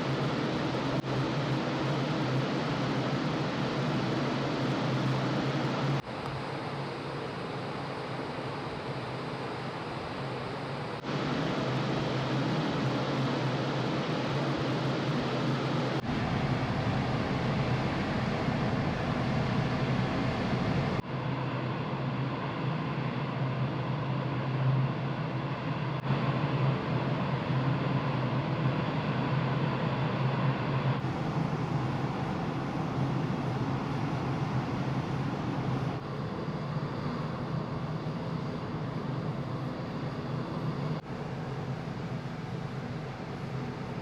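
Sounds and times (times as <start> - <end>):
ferry engine hum: 16.0 - 21.0.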